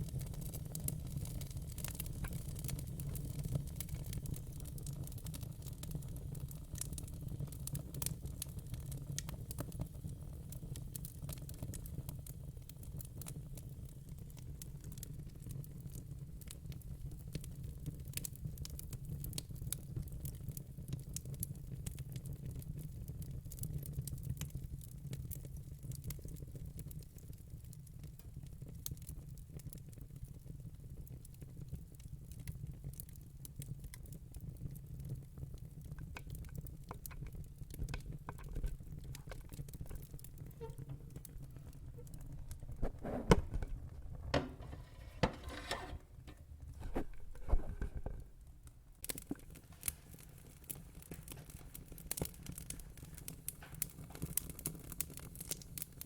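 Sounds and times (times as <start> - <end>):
fire pops and snaps: 0.0 - 22.6, 35.1 - 56.0
fire rumble: 0.0 - 26.6, 34.2 - 56.0.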